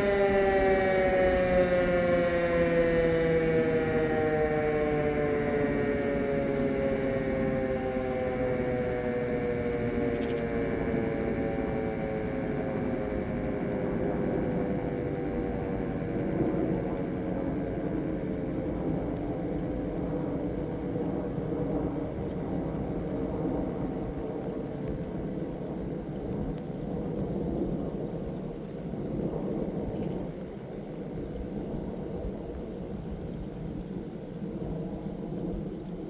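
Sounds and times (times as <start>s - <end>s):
siren winding down: 0.0s - 20.0s.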